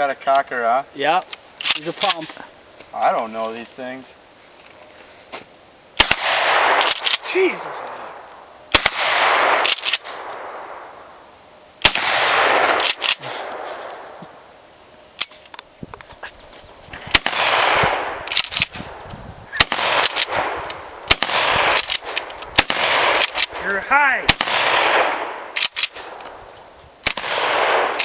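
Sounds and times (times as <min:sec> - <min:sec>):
short sharp cracks: 0:06.0 - 0:10.8, 0:11.8 - 0:14.2, 0:16.9 - 0:28.0
shotgun shots echoing: 0:06.0 - 0:11.0, 0:11.8 - 0:14.2, 0:17.0 - 0:26.4, 0:27.0 - 0:28.0.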